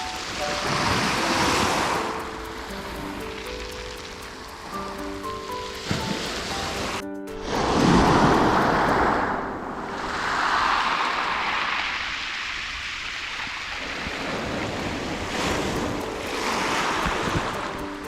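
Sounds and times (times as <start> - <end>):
surf breaking on pebbles: 0.2 - 2.3, 9.9 - 17.8
wind buffeting microphone: 4.3 - 18.0.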